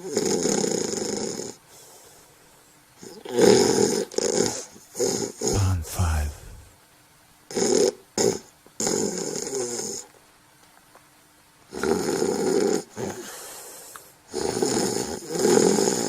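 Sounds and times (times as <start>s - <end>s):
person snoring: 5.6s - 6.7s.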